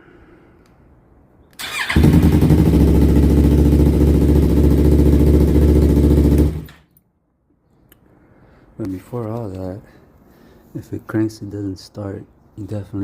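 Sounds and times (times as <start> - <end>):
motorcycle engine idling: 1.7 - 6.7.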